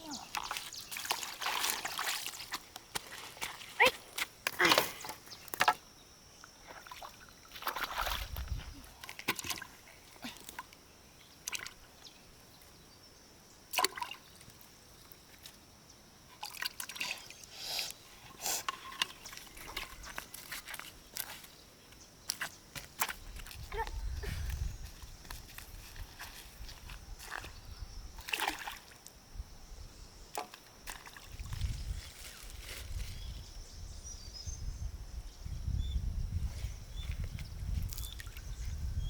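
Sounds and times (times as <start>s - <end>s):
water sloshing and dripping: 0.1s - 5.8s, 6.6s - 12.0s, 13.7s - 15.6s, 16.3s - 17.5s, 18.2s - 21.5s, 28.2s - 29.2s, 30.4s - 32.3s.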